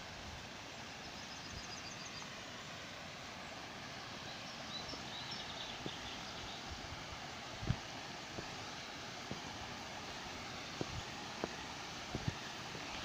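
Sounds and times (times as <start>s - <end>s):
stream flowing: 0.0s - 13.0s
faint bird chirps: 0.9s - 2.5s, 3.4s - 6.7s.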